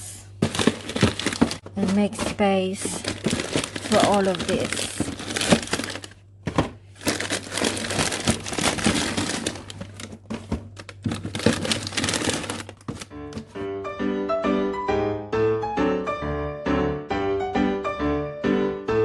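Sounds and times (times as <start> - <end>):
plastic packaging crinkling: 0.4 - 13.5
piano music: 13.0 - 19.0.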